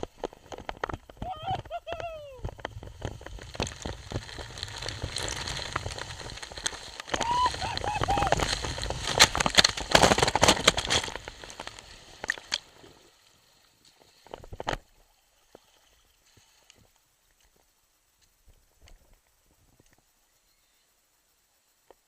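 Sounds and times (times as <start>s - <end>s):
heavy splashing: 1.2s - 12.8s
short wavering cry: 1.3s - 2.4s, 7.2s - 8.4s.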